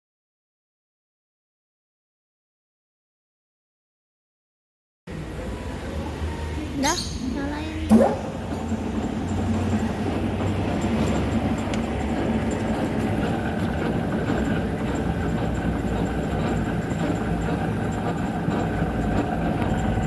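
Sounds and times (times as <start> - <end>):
metal lathe running: 5.1 - 20.0.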